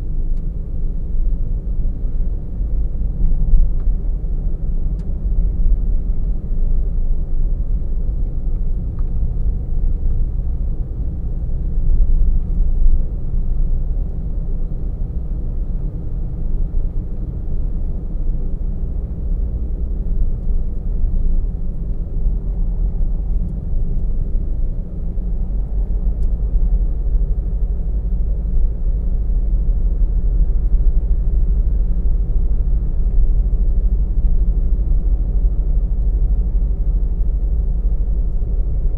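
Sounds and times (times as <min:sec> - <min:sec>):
car interior road rumble: 0:00.0 - 0:38.9.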